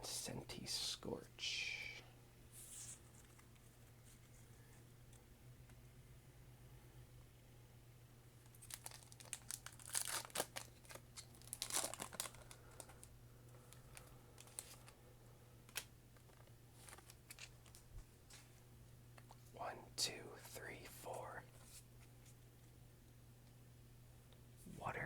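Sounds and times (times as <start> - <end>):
faint low hum: 0.0 - 25.0
foil wrapper crinkling and tearing: 8.5 - 13.1, 13.9 - 15.0.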